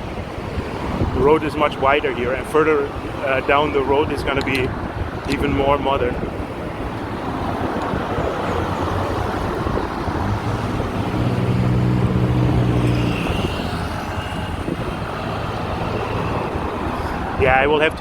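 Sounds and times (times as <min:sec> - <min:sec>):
road traffic: 0:00.0 - 0:18.0
vehicle engine passing close: 0:06.7 - 0:17.3.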